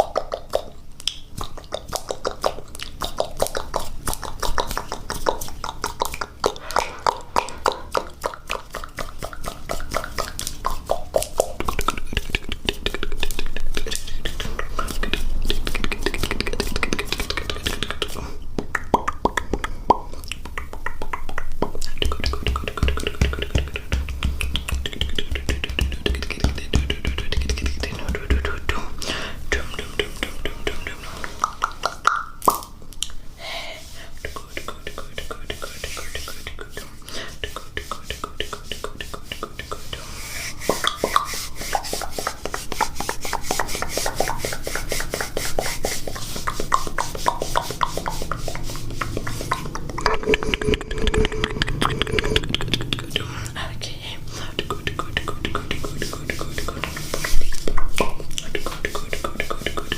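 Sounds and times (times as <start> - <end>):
wet mouth clicks and pops: 0.0 - 28.5, 31.3 - 33.2, 40.6 - 45.4, 46.4 - 53.2.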